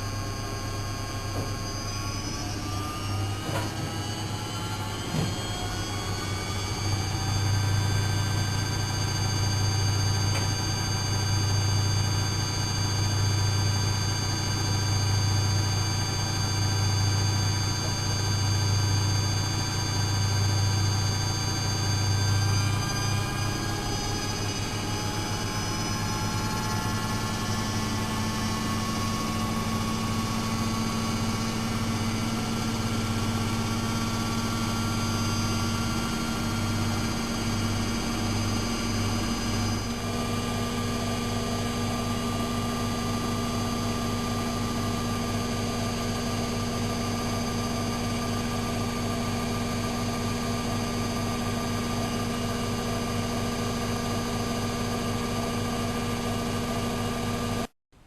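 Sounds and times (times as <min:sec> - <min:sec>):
washing machine motor humming: 0:00.0 - 0:57.6.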